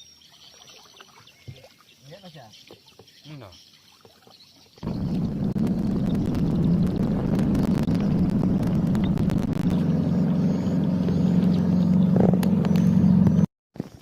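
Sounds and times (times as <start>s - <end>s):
boat engine humming: 4.8s - 13.5s.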